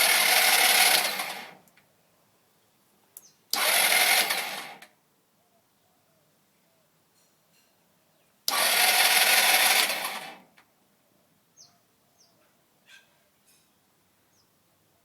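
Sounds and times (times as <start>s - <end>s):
scooter starter cranking engine: 0.0s - 1.7s, 3.5s - 4.9s, 8.5s - 10.6s.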